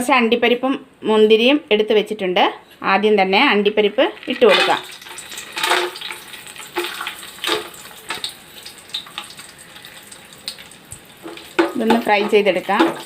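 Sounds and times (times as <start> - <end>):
nuts sizzling in oil: 4.2 - 13.0.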